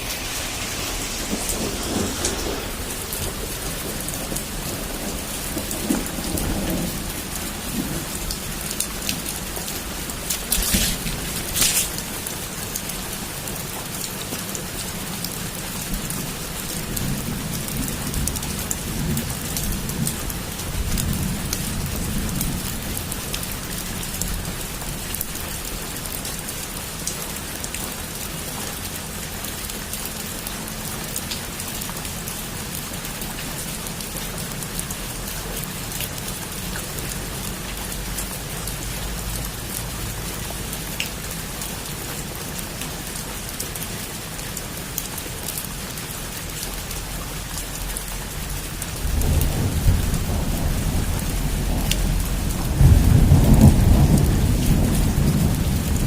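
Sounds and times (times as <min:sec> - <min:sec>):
low rumble of thunder: 0:00.0 - 0:14.0, 0:14.9 - 0:25.5, 0:48.4 - 0:56.0
heavy rain on a rooftop: 0:00.0 - 0:56.0.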